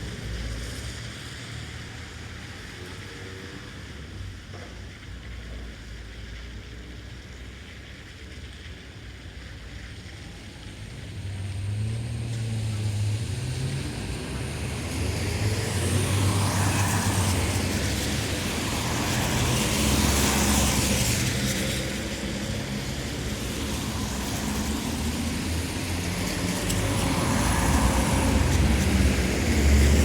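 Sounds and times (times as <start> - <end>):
tyres hissing on wet asphalt: 0.0 - 30.0
vehicle engines humming: 8.7 - 30.0.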